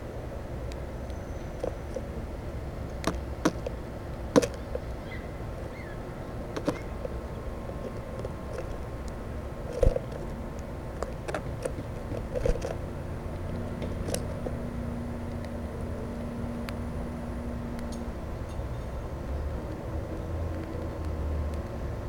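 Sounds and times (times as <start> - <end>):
birds pecking at feeder: 0.6 - 17.1.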